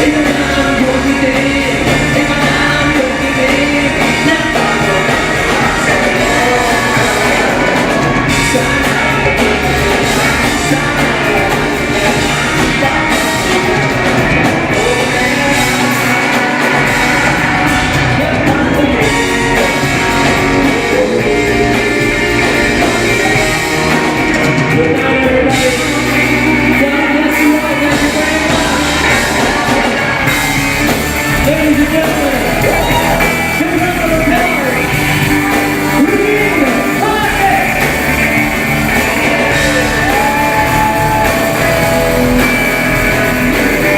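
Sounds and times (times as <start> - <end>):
woman singing: 0.0 - 30.1
live rock band playing: 0.0 - 43.9.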